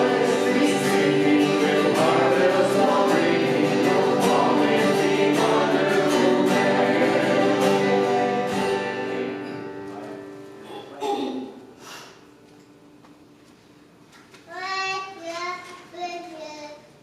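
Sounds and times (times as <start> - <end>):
choir singing gospel: 0.0 - 9.9
guitar accompaniment: 0.0 - 11.0.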